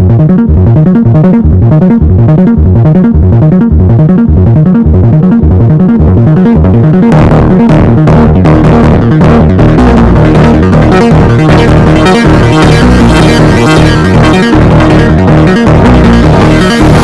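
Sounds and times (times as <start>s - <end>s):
music with repeating beat: 0.0s - 17.0s.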